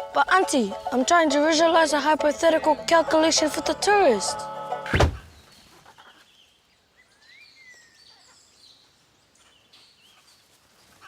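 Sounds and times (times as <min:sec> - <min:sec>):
faint bird chirps: 0:05.2 - 0:11.0.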